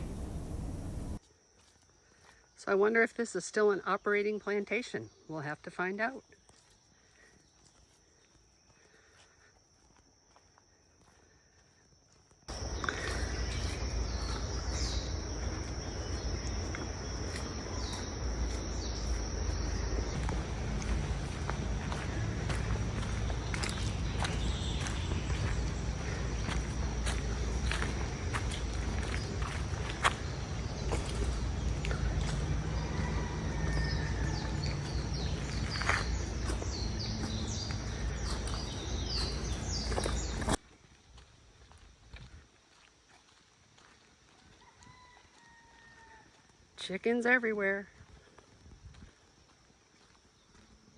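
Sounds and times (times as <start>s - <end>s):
loud low rumbling: 0.0s - 1.2s, 12.5s - 40.5s
insects buzzing: 0.0s - 3.3s, 6.3s - 40.6s
bird chirping: 12.6s - 40.6s.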